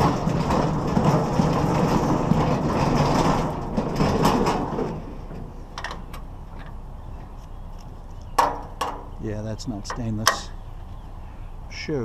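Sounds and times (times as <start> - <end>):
scrap metal rattling clatter: 0.0 - 6.9, 8.3 - 9.2.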